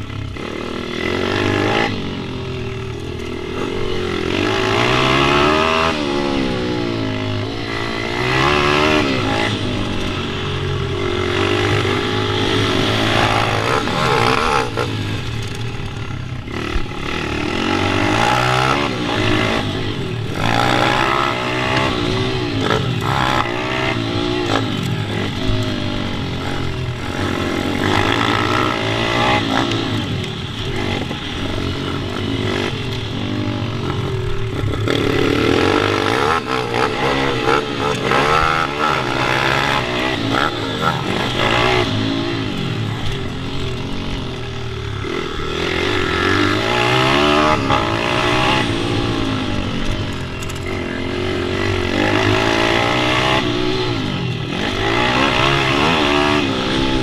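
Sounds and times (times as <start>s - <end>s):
pit bike engines revving: 0.0s - 57.0s.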